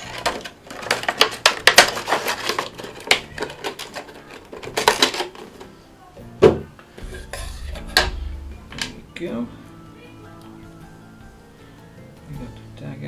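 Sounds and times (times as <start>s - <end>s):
plastic packaging crinkling: 0.0s - 5.8s
heavier knock: 7.0s - 9.8s.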